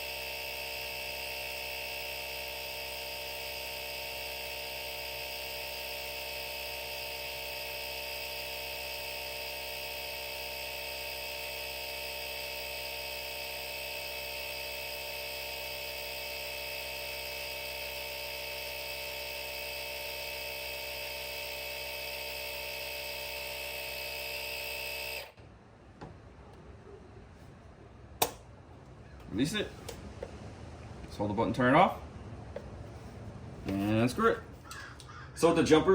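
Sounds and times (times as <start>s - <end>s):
portable air compressor running: 0.0s - 25.4s, 32.6s - 35.0s.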